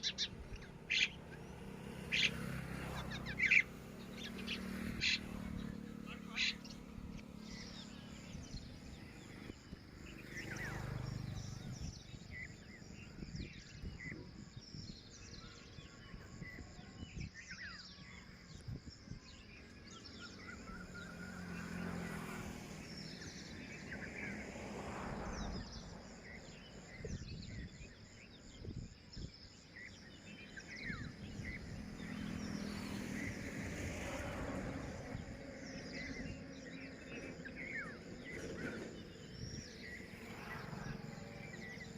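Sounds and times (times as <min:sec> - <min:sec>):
bird chirps: 0:00.0 - 0:24.5.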